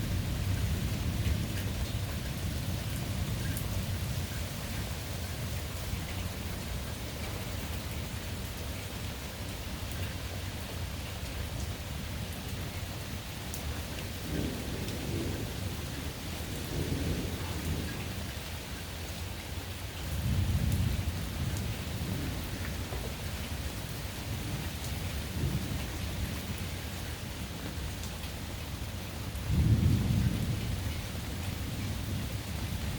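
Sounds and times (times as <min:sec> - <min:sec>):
rain pattering: 0:00.0 - 0:32.9
thunder rumbling: 0:14.2 - 0:18.2, 0:29.4 - 0:32.8.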